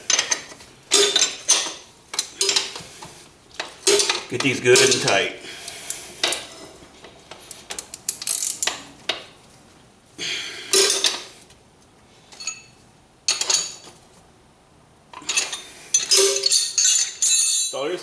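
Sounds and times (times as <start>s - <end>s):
wrench clinking on bolts: 0.0s - 2.8s, 3.6s - 6.5s, 7.4s - 9.2s, 10.7s - 11.3s, 12.3s - 13.9s, 15.2s - 17.8s.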